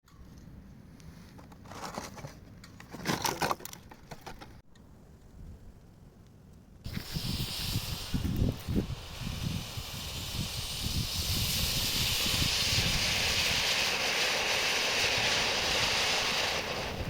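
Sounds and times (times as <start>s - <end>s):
fountain firework hissing: 6.9s - 17.0s.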